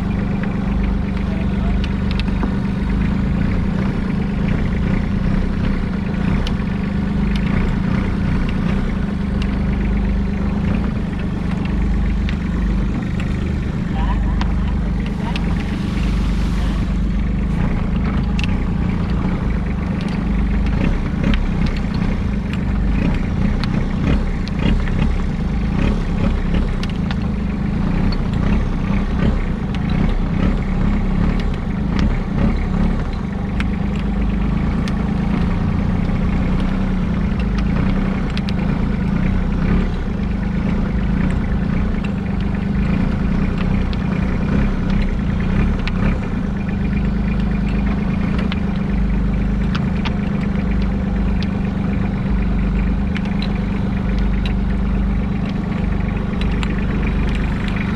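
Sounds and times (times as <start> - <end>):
boat engine running: 0.0 - 57.9.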